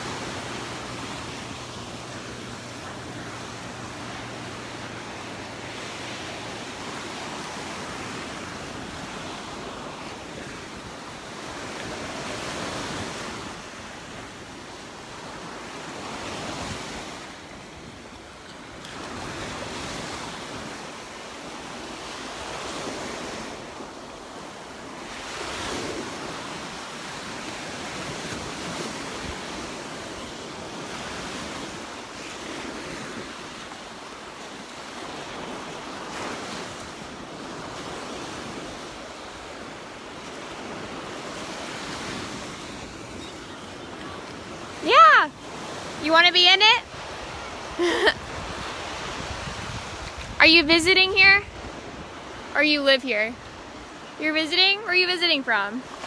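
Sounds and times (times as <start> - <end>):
surf breaking on beach: 0.0 - 56.0
wind buffeting microphone: 46.8 - 52.4.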